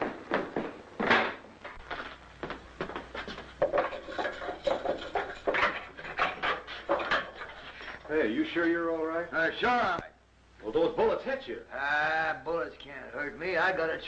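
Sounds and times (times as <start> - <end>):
irregular knocks and thuds: 0.0 - 7.5.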